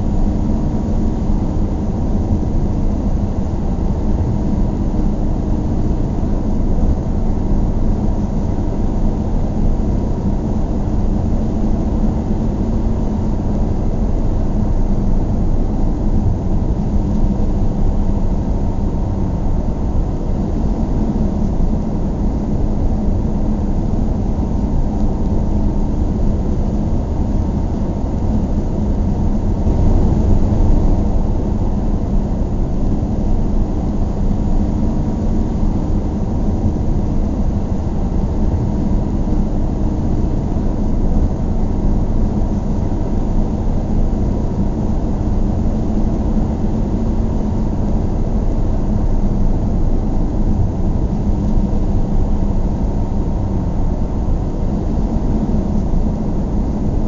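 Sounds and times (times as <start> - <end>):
car engine and tyre drone: 29.4 - 32.1.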